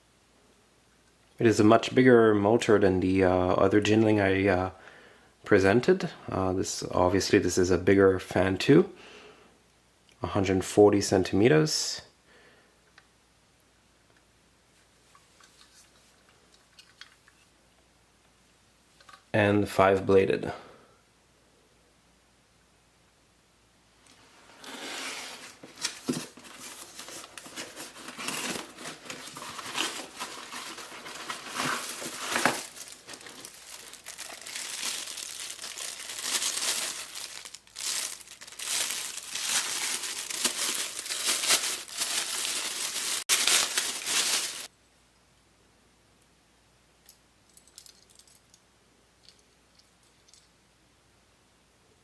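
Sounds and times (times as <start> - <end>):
packaging crinkling and tearing: 25.3 - 44.7.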